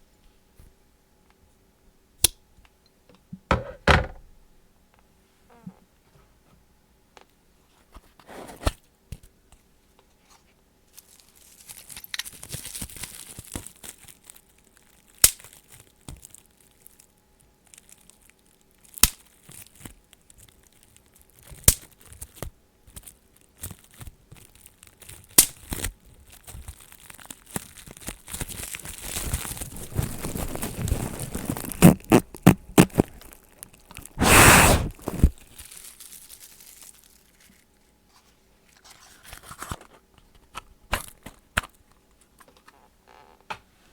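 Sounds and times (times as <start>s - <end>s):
crackly hissing: 32.8s - 35.4s.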